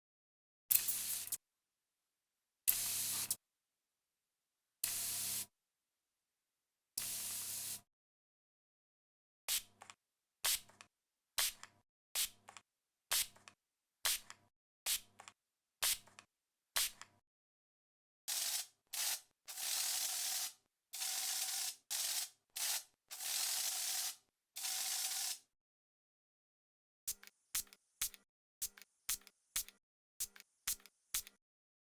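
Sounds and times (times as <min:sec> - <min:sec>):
spray bottle spritzing: 0:18.3 - 0:20.5.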